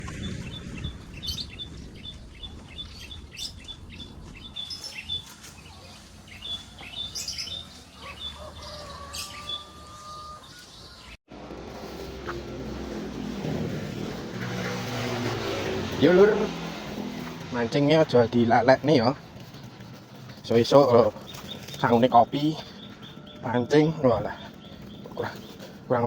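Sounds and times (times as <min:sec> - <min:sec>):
small birds chirping: 0:00.1 - 0:11.2, 0:14.0 - 0:26.0
low rumble: 0:11.3 - 0:17.8.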